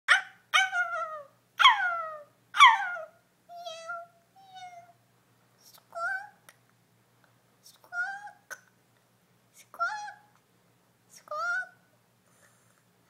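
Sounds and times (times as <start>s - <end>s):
child imitating cat meows: 3.0s - 5.0s.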